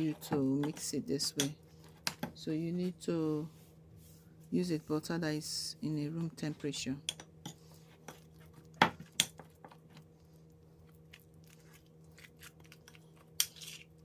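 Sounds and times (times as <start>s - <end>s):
spoon squishing butter: 9.8s - 14.0s
spoon scraping bowl: 12.8s - 14.0s.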